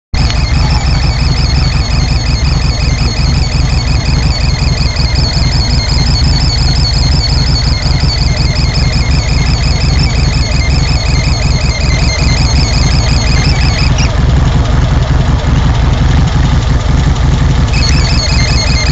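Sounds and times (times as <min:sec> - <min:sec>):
high-pitched chirp: 0:00.2 - 0:14.1, 0:17.7 - 0:18.9
car engine idling: 0:00.2 - 0:18.9.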